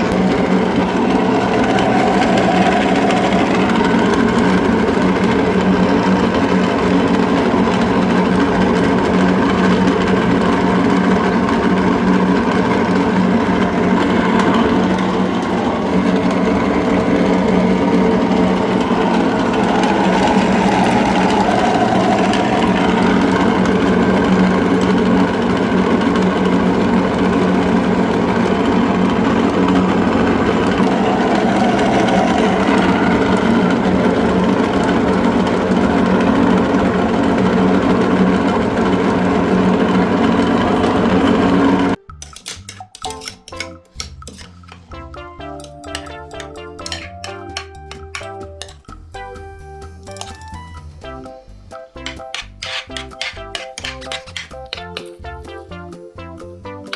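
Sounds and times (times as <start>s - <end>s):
electric meat grinder running: 0.0s - 42.0s, 45.5s - 48.7s, 52.0s - 54.8s.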